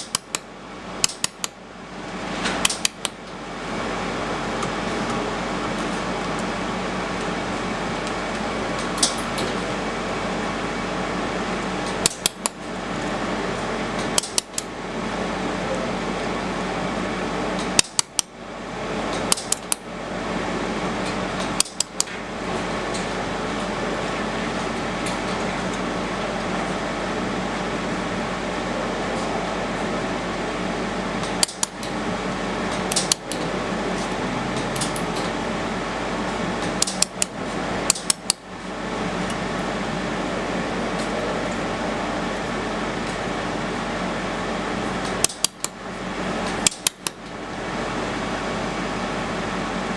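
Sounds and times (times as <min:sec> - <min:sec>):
sharp metallic clicks: 0:00.0 - 0:01.6, 0:02.6 - 0:03.2, 0:14.1 - 0:14.7, 0:19.3 - 0:19.8, 0:31.2 - 0:32.0, 0:32.8 - 0:33.4, 0:36.8 - 0:37.3, 0:37.9 - 0:38.4, 0:45.2 - 0:45.8, 0:46.6 - 0:47.2
welding machine fans humming: 0:00.0 - 0:49.9.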